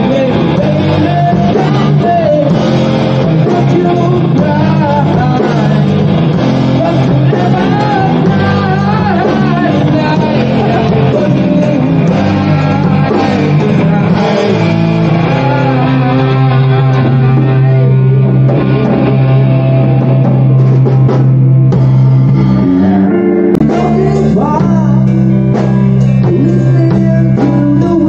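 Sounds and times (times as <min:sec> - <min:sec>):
person singing: 0:00.0 - 0:19.7, 0:22.5 - 0:28.0
rock music with distorted guitar: 0:00.0 - 0:28.0.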